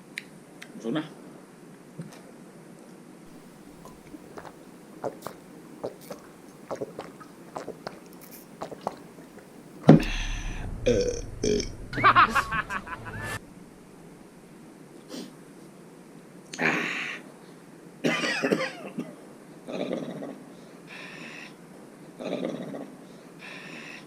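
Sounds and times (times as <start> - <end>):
chewing noises: 3.8 - 9.4
loud long burp: 10.0 - 13.4.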